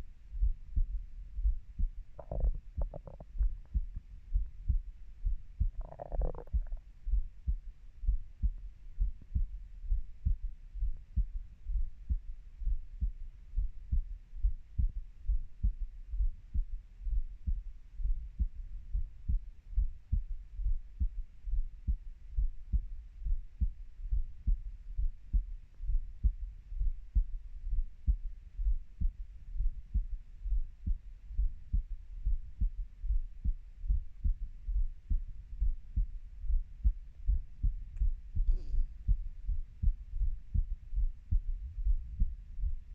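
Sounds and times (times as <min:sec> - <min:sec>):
heartbeat thumps: 0:00.0 - 0:42.9.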